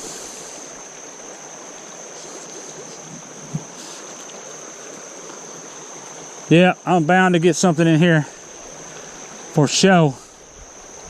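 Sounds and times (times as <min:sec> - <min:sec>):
creek water rushing over rapids: 0:00.0 - 0:11.0.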